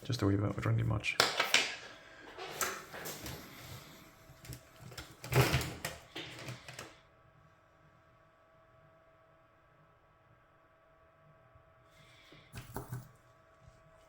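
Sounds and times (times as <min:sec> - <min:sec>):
faint hum: 0:00.0 - 0:14.0.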